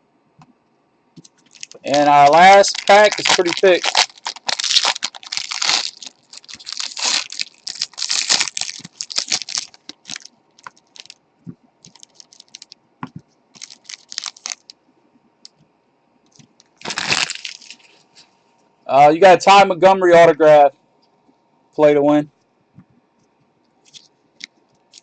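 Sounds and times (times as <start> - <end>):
cards rustling and clicking: 1.2 - 6.6
wrapper tearing and crinkling: 1.4 - 11.2, 11.8 - 12.8, 13.6 - 14.7, 16.8 - 18.0.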